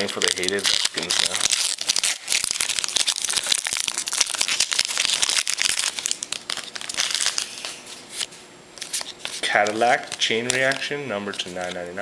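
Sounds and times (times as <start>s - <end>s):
wrapper crinkling: 0.0s - 11.9s.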